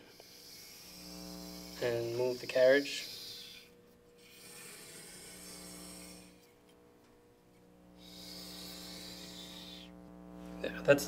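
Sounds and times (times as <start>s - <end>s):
cotton swab rubbing wheels: 0.0s - 6.4s, 8.0s - 9.9s.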